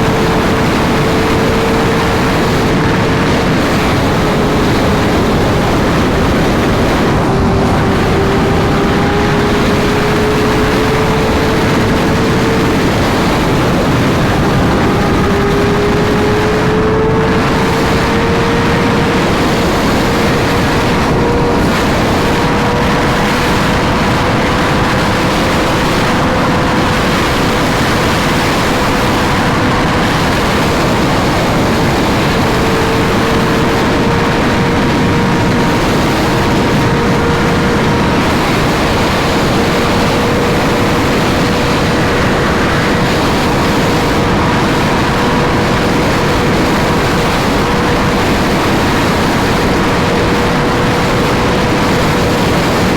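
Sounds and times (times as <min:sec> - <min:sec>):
heavy wind rush: 0:00.0 - 0:52.9
motorcycle engine high note: 0:00.1 - 0:45.7.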